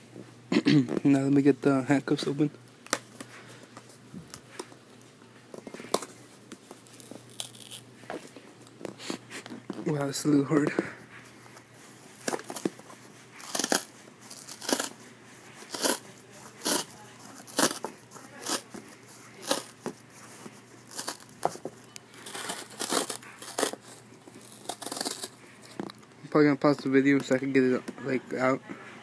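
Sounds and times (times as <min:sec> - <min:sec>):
packaging crunching and crinkling: 0:06.8 - 0:08.4, 0:12.1 - 0:26.1.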